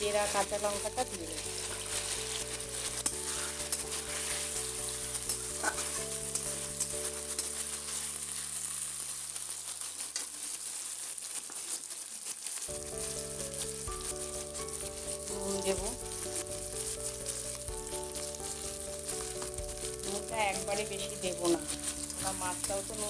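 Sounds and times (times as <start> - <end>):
spatula clicking and scraping: 0.0 - 23.0
vegetables sizzling in hot oil: 0.0 - 23.0.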